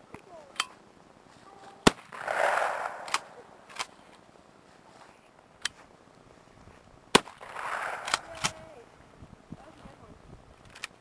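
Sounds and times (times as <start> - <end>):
shotgun blasts with echo: 1.8 - 3.5, 7.1 - 8.7.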